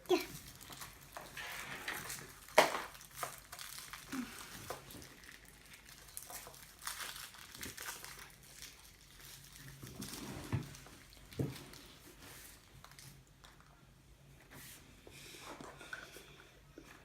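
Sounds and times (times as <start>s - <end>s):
foil wrapper crinkling: 0.2s - 13.7s.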